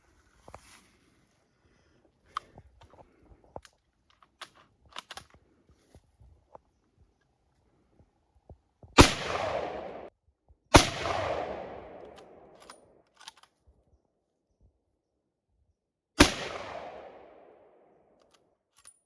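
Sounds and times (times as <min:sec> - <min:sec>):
rifle shots with echo: 0:09.0 - 0:10.1, 0:10.7 - 0:12.6, 0:16.2 - 0:17.9.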